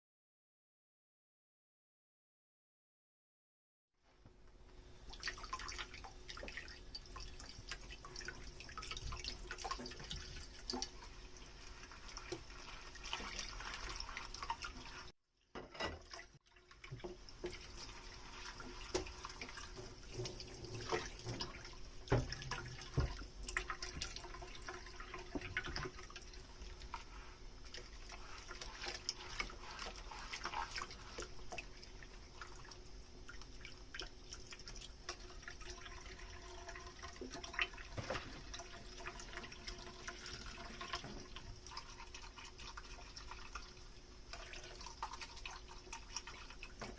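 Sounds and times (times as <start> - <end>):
tap water running: 4.4 - 46.9
dishes clinking: 15.6 - 16.2.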